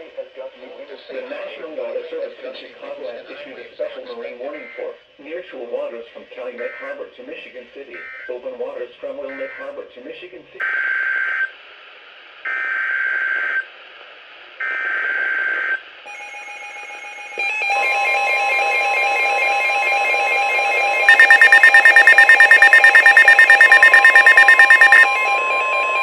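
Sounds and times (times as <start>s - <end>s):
fast pulsing beep: 21.1s - 25.1s
raspy digital data bursts: 21.1s - 25.1s
steady alert tone: 21.1s - 25.1s
electronic beeping alarms: 21.1s - 25.3s.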